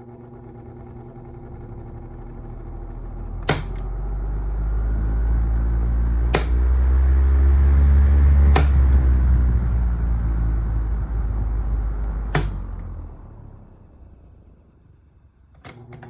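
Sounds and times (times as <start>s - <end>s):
machine humming: 0.0s - 16.0s
sharp clicks: 6.4s - 6.8s, 8.5s - 9.0s.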